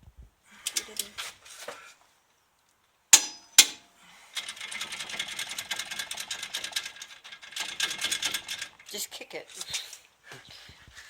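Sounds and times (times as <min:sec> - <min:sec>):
sharp metal clanks: 0:03.2 - 0:03.9.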